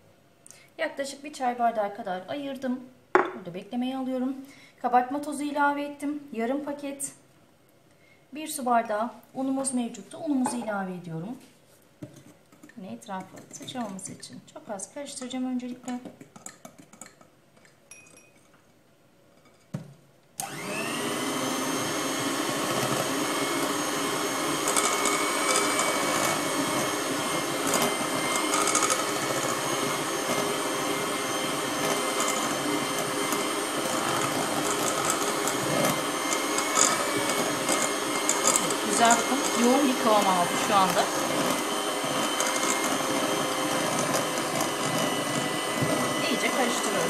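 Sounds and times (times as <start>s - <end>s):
electric mixer whining: 20.4s - 47.0s.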